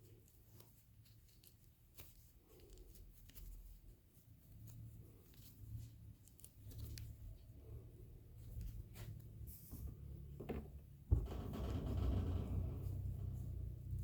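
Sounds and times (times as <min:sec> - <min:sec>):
small clicks and snips: 0:04.6 - 0:07.4.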